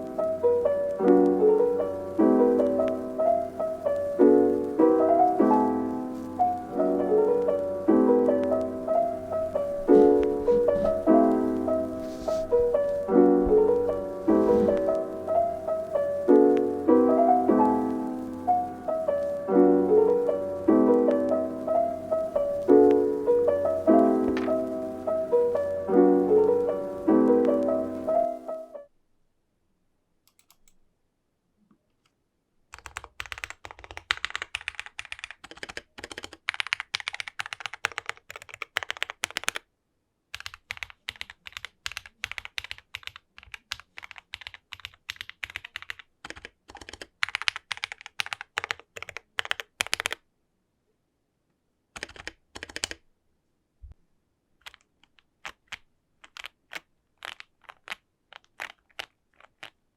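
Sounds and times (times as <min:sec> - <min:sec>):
mechanical keyboard typing: 0:24.2 - 0:24.7, 0:30.3 - 0:30.8, 0:32.7 - 0:39.7, 0:40.3 - 0:50.2, 0:51.9 - 0:53.0, 0:54.6 - 0:59.8.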